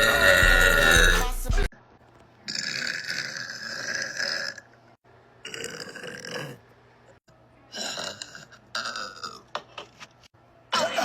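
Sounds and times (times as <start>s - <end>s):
woman belching: 0.0s - 1.2s, 2.5s - 4.7s, 5.4s - 6.6s, 7.7s - 9.5s
music with heavy beat: 0.0s - 1.7s.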